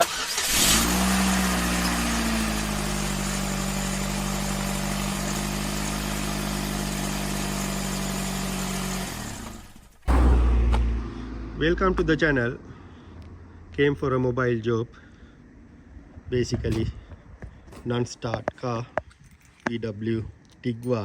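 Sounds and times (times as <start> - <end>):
car engine starting and idling: 0.0 - 14.1.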